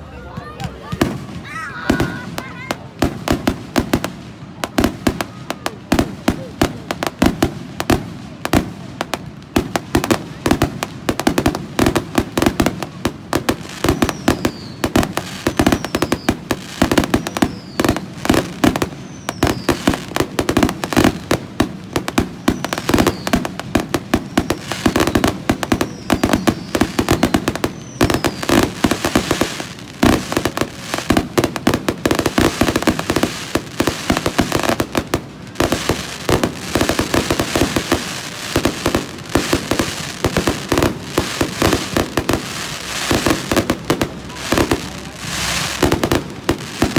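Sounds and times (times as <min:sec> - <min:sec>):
fireworks bangs and crackles: 0:00.0 - 0:46.9
falling firework whistles: 0:13.7 - 0:20.1, 0:22.1 - 0:31.2.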